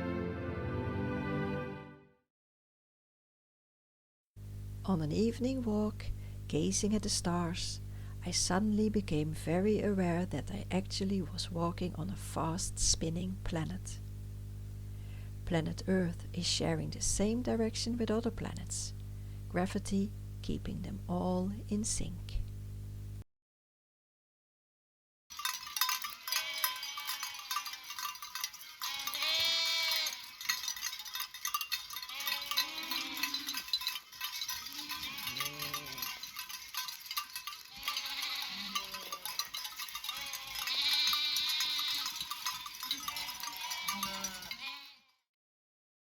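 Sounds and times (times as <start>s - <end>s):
livestock bells clanking: 25.3s - 45.0s
animals bleating: 25.9s - 45.2s.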